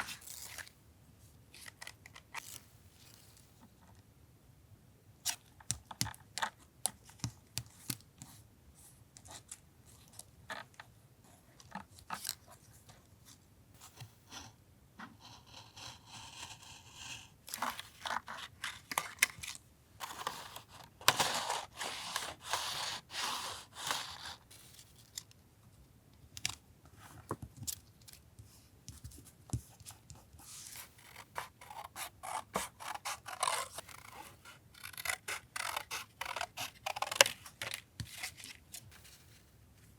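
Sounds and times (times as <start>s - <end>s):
scissors snipping paper: 30.8s - 38.5s.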